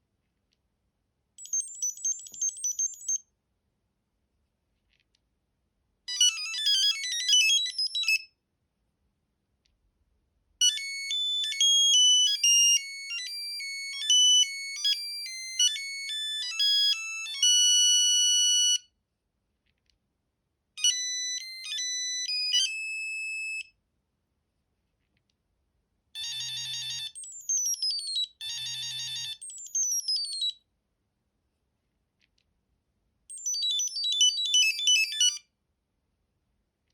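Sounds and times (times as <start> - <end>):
phone ringtone beeping melodies: 1.4 - 3.2, 6.1 - 8.2, 10.6 - 18.8, 20.8 - 23.6, 26.2 - 30.5, 33.3 - 35.4.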